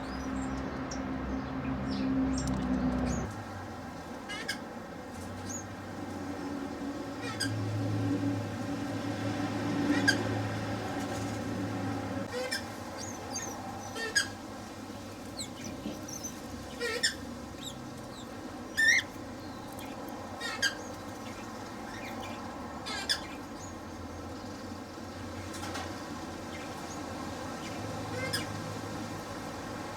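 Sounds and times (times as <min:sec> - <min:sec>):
cockatiels squawking and chirping: 0:04.3 - 0:04.6, 0:07.2 - 0:07.6, 0:09.9 - 0:10.3, 0:12.3 - 0:14.4, 0:15.3 - 0:23.8, 0:27.5 - 0:28.6.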